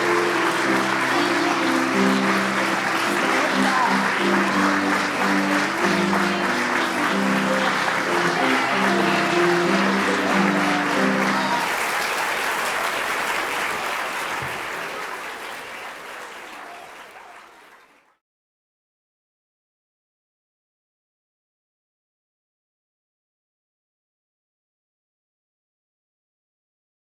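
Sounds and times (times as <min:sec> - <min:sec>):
instrumental music: 0:00.0 - 0:11.7
audience applauding: 0:00.0 - 0:18.2.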